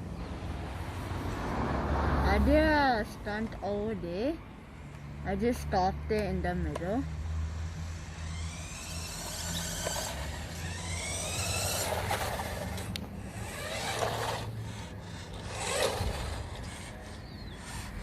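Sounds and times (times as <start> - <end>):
toy truck electric motor whining: 7.4 - 18.0
tyres scraping on ground: 8.0 - 18.0.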